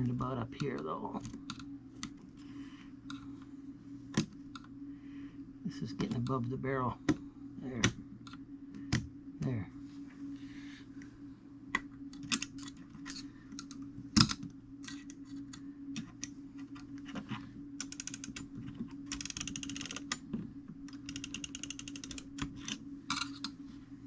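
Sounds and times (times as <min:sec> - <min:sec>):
steady low hum: 0:00.0 - 0:24.0
rapid ratchet clicking: 0:17.8 - 0:18.4, 0:19.2 - 0:20.2, 0:21.0 - 0:22.3.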